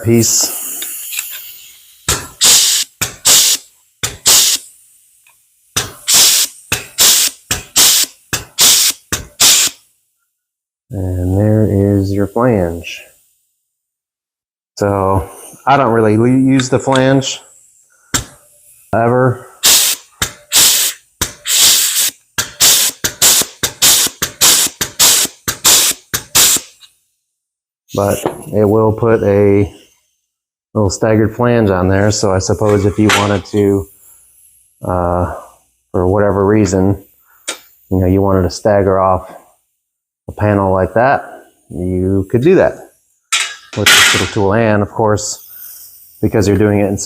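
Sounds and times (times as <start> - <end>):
exhaust air hissing: 0.0 - 9.8, 14.8 - 26.9, 27.9 - 29.9, 31.0 - 39.4, 41.2 - 47.0
air tool clacking: 0.3 - 9.8, 16.4 - 18.9, 19.6 - 26.9, 32.6 - 34.8, 36.7 - 37.9, 43.3 - 44.5, 45.2 - 46.4.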